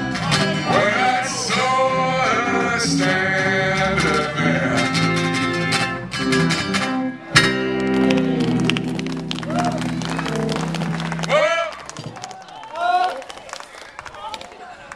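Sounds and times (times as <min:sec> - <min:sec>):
live band playing pop: 0:00.0 - 0:11.4.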